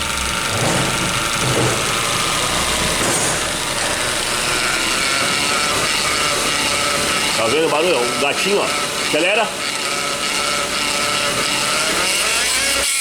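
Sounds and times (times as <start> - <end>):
transmission whining: 0.0 - 12.8.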